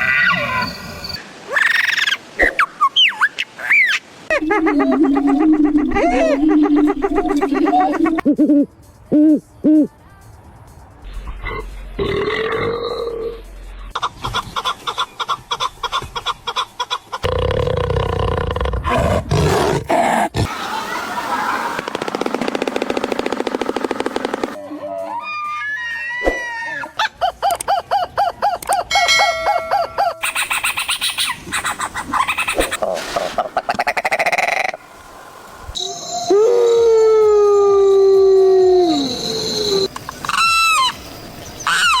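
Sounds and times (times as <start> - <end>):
animal calling: 1.5 - 8.4.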